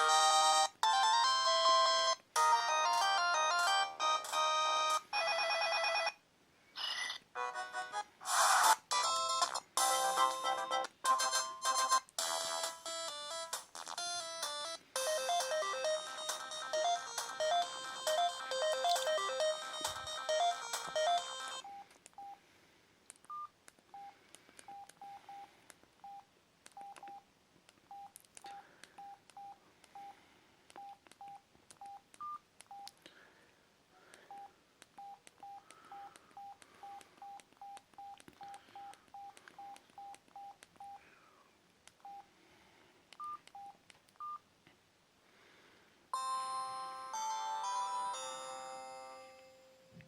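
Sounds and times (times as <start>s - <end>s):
phone keypad beeps: 15.0s - 22.4s, 23.3s - 26.2s, 26.8s - 27.2s, 27.9s - 28.1s, 30.8s - 32.9s, 34.3s - 41.0s, 42.0s - 42.2s, 43.2s - 44.4s.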